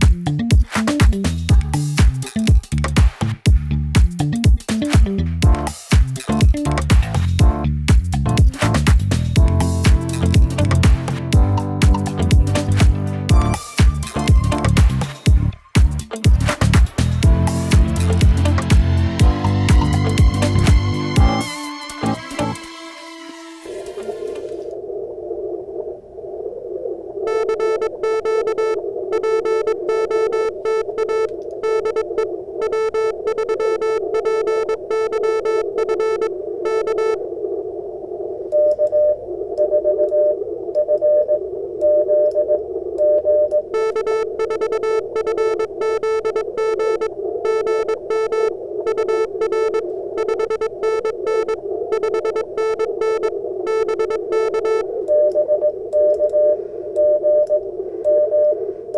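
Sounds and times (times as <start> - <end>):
morse code sidetone: 8.3 - 15.4, 16.6 - 22.6, 27.3 - 37.2, 38.6 - 58.6
higher morse tone: 9.4 - 14.8, 17.2 - 22.9, 27.3 - 37.2, 43.7 - 54.9.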